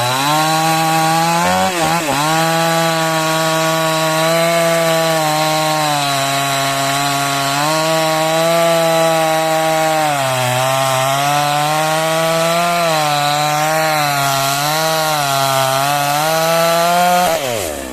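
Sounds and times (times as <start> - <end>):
chainsaw cutting wood: 0.0 - 17.9.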